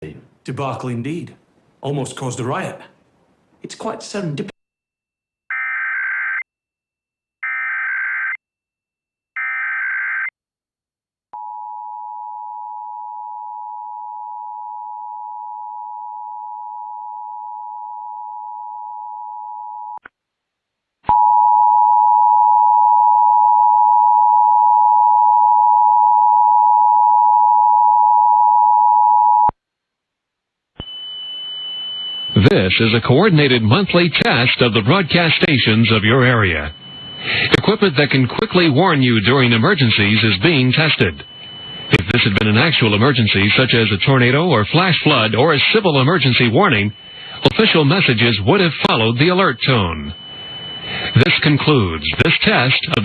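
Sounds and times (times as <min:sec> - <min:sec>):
two-tone attention signal: 0:49.6 - 0:52.2.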